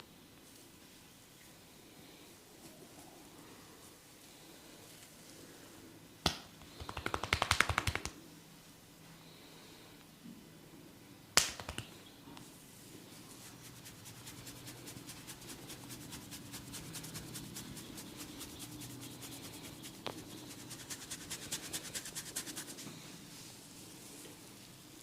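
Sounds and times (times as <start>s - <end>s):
hands rubbing and scratching: 6.3s - 8.2s, 11.4s - 12.0s, 13.1s - 23.1s.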